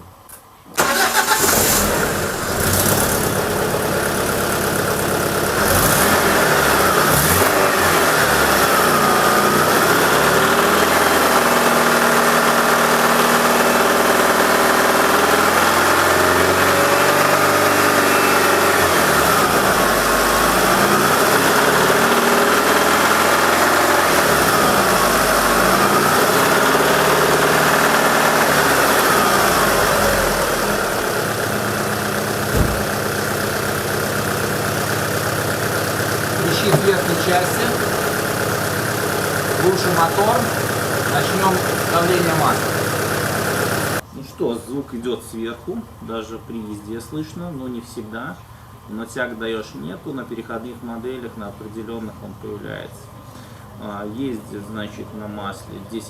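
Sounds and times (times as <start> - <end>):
car engine revving: 0.8 - 44.0
engine knock and crackle: 31.0 - 44.0
person speaking: 36.4 - 37.9, 39.6 - 42.7.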